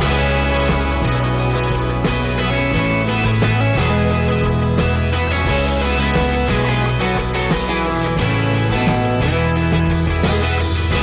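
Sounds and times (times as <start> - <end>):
bass line: 0.0 - 11.0
instrumental rock music: 0.0 - 11.0.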